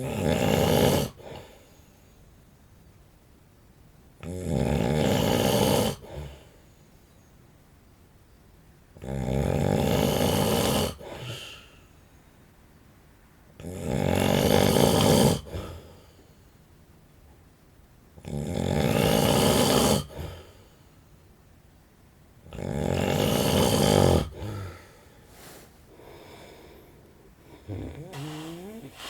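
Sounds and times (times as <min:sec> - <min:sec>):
man snoring: 0:00.0 - 0:01.5, 0:04.2 - 0:06.4, 0:09.0 - 0:11.6, 0:13.6 - 0:15.8, 0:18.2 - 0:20.4, 0:22.5 - 0:26.8, 0:27.4 - 0:29.0
soft breath: 0:24.4 - 0:29.0.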